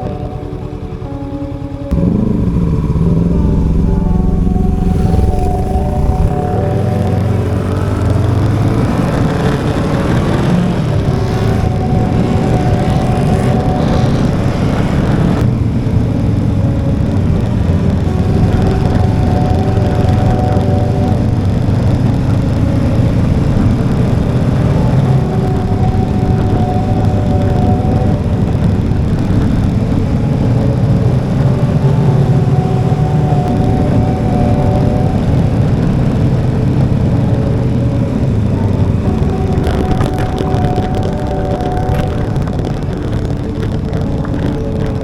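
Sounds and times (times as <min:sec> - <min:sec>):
motorcycle engine running: 0:00.0 - 0:45.0
wind and road noise: 0:00.0 - 0:45.0.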